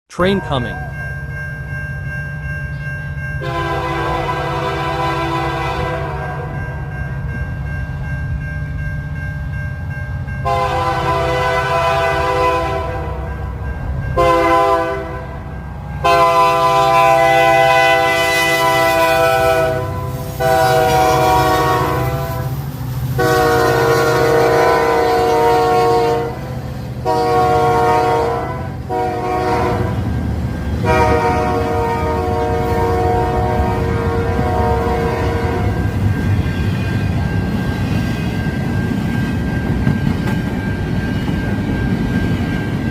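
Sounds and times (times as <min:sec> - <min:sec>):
low rumble of locomotive: 0:00.8 - 0:42.9
train horn blasts: 0:03.4 - 0:06.6, 0:10.4 - 0:13.4, 0:14.2 - 0:22.6, 0:23.2 - 0:30.1, 0:30.8 - 0:36.0.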